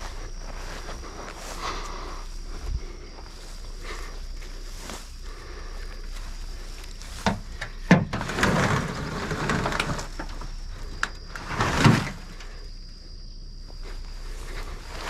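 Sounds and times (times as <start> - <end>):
sheet metal scraping: 11.3 - 12.5.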